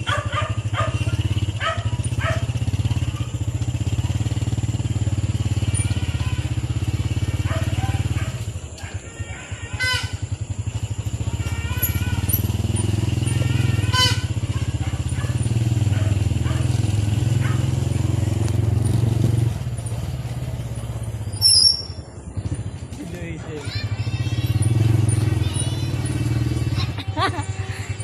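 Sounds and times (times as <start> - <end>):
small engine running: 0.0 - 28.0
short high squeaks: 11.3 - 14.6, 21.0 - 22.1.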